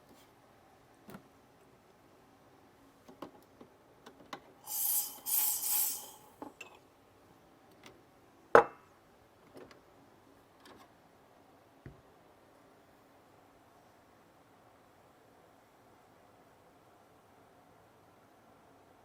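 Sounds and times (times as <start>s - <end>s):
espresso machine hiss: 4.6s - 6.4s.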